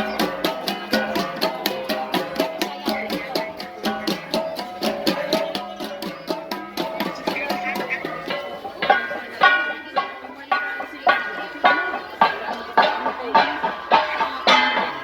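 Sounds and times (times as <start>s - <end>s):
bronze gongs played fast: 0.0s - 15.0s.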